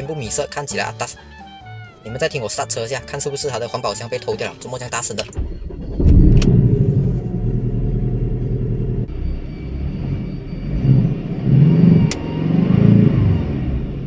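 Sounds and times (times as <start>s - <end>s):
car engine revving: 5.3s - 14.0s.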